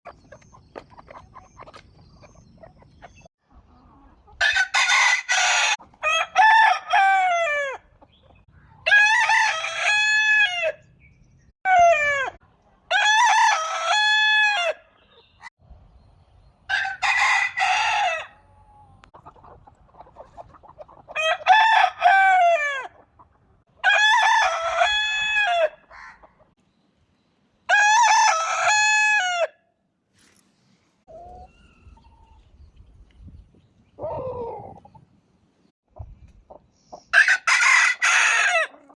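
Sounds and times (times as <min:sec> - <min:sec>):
rooster crowing: 0:16.7 - 0:18.5, 0:37.2 - 0:38.8.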